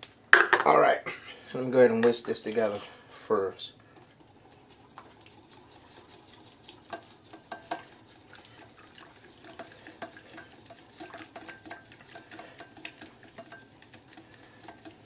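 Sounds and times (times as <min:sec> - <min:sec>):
whisk clicking against a bowl: 0:04.0 - 0:15.0.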